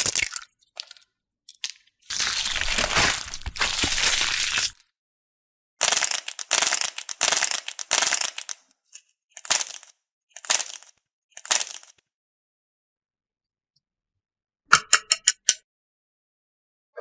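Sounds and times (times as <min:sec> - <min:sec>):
crunchy slime crackling: 0:01.6 - 0:04.8, 0:05.8 - 0:08.6.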